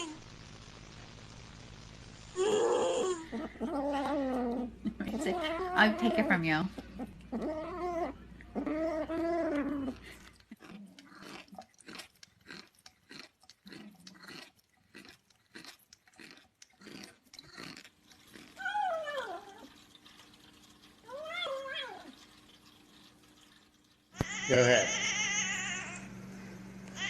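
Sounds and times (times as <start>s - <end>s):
cat chewing crunchily: 3.3s - 24.0s
cat meowing: 24.2s - 26.0s.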